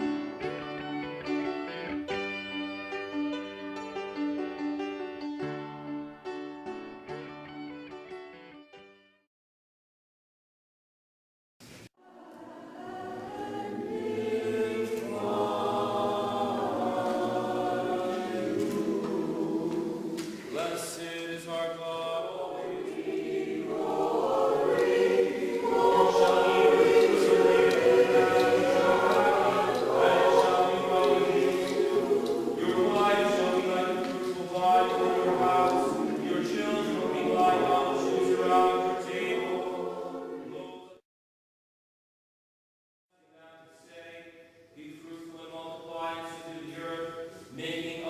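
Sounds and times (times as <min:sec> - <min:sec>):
choir singing in harmony: 0:12.0 - 0:41.0, 0:44.0 - 0:48.0.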